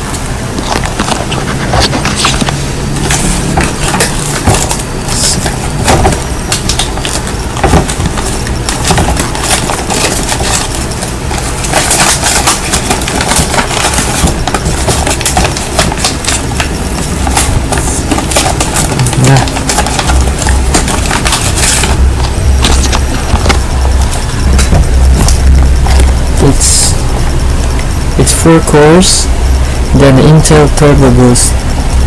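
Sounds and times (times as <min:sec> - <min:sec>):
box handling crackles: 0:00.0 - 0:27.9
low hum: 0:00.0 - 0:32.0.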